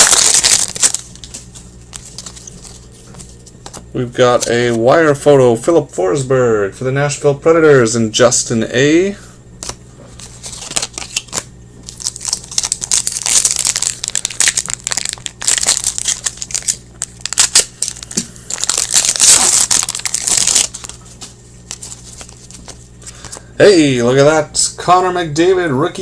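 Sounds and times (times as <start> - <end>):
foil wrapper crinkling: 0.0 - 4.8, 9.6 - 23.4.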